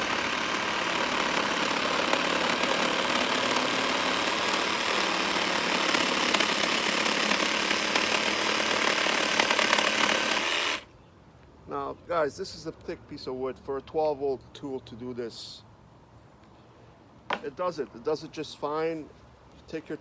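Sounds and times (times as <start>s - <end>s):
jigsaw sawing through board: 0.0s - 10.8s.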